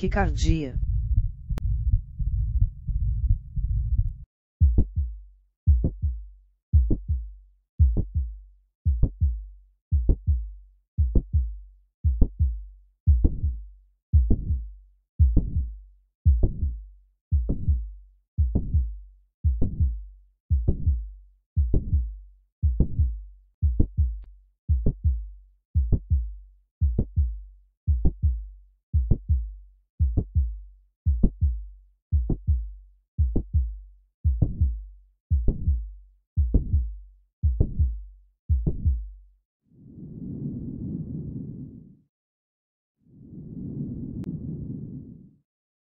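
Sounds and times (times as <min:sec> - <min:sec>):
low-pitched heart murmur rumble: 0:00.0 - 0:06.2, 0:33.2 - 0:33.7, 0:34.3 - 0:35.8
regular heartbeat: 0:00.0 - 0:39.2.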